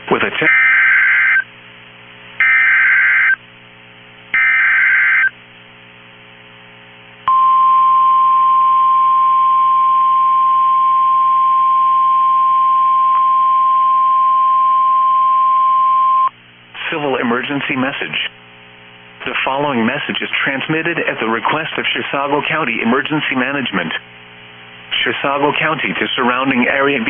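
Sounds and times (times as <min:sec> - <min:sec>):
data tone bursts: 0:07.3 - 0:16.3.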